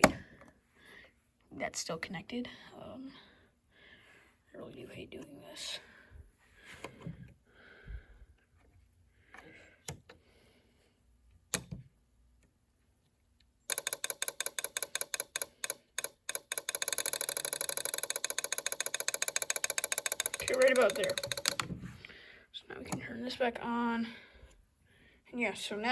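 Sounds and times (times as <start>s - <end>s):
alarm rapid clicking rattle: 13.7s - 21.7s
sharp clicks: 13.7s - 21.7s.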